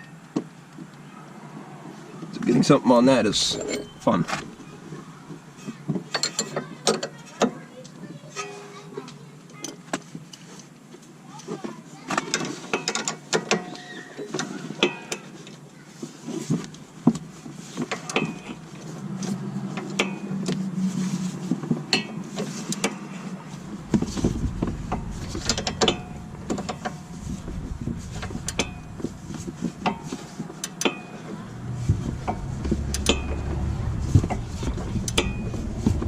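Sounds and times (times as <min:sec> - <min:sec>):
low rumble: 0:03.2 - 0:04.8, 0:23.0 - 0:36.0.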